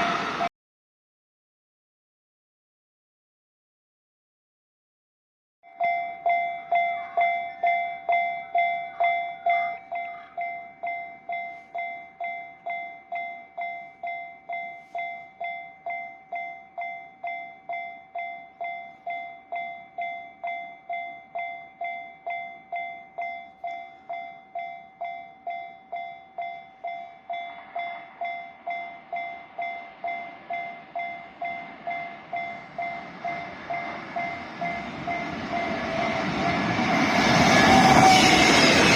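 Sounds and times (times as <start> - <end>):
approaching freight train rumble: 0.0 - 0.5, 26.3 - 38.9
level crossing warning alarm: 5.7 - 38.9.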